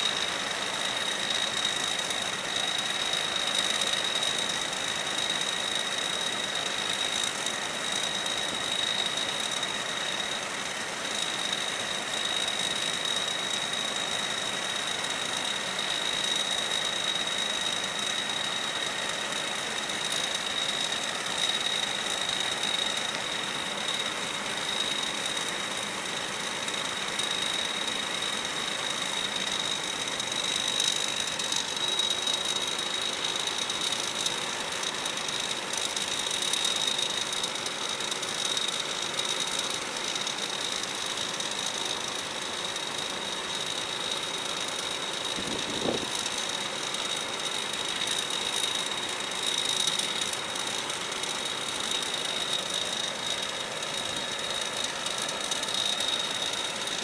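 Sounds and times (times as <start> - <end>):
combine harvester running: 0.0 - 57.0
high-pitched machine whine: 0.0 - 57.0.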